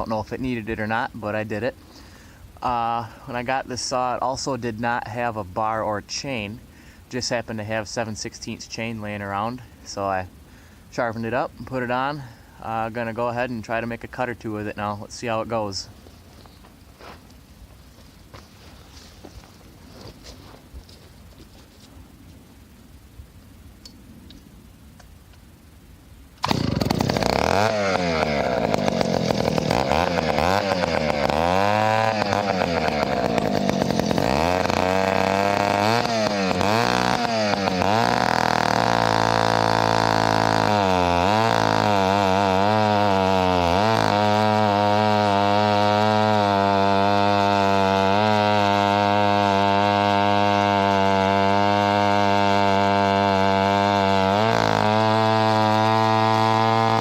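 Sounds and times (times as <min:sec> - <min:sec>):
chainsaw revving: 0:26.4 - 0:57.0.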